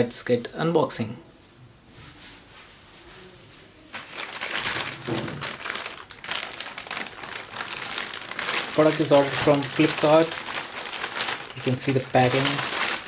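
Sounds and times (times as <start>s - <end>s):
packaging crinkling: 3.9s - 13.0s.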